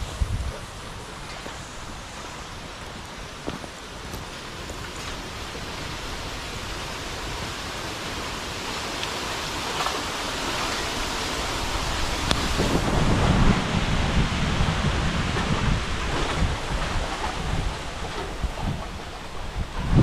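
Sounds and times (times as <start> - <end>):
bonfire roaring: 0.0 - 20.0
fire crackles: 0.0 - 20.0
low rumbling: 10.1 - 20.0.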